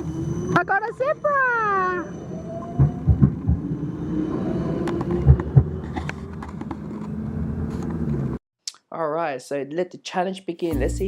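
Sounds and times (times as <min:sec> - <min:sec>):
city traffic rumble: 0:00.0 - 0:08.4.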